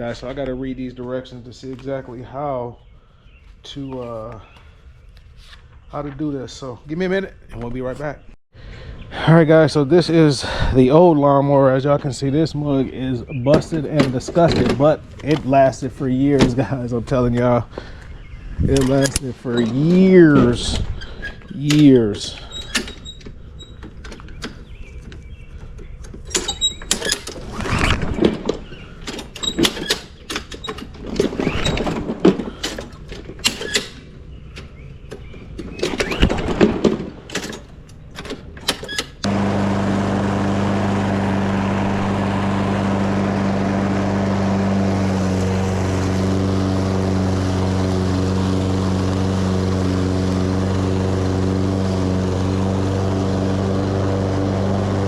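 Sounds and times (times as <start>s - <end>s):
lawn mower engine running: 18.8s - 22.7s, 39.2s - 55.0s.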